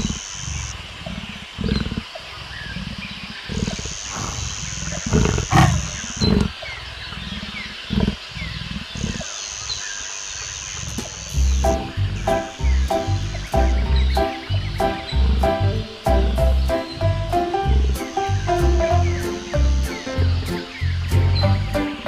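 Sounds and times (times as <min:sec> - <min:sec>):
big cat grunts: 0:00.0 - 0:06.6, 0:07.2 - 0:09.3
big cat growling: 0:00.0 - 0:09.4, 0:11.4 - 0:16.3.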